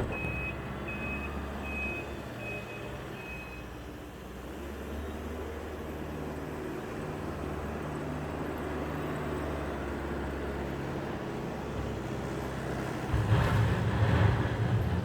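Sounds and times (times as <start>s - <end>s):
diesel engine running: 0.0s - 1.6s.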